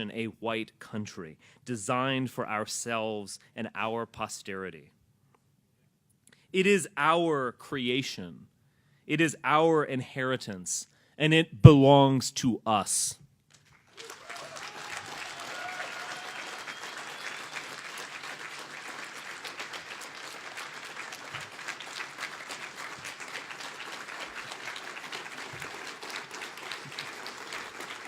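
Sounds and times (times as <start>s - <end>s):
audience applauding: 13.6s - 28.0s.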